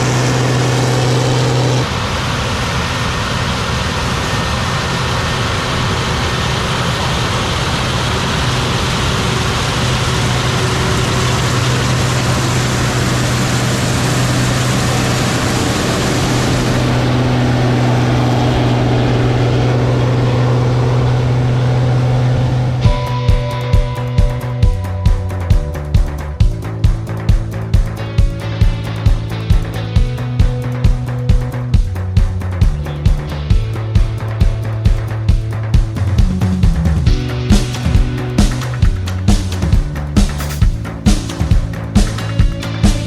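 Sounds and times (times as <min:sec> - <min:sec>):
rushing noise: 0:00.0 - 0:30.1
heavy machinery engine running: 0:00.0 - 0:43.0.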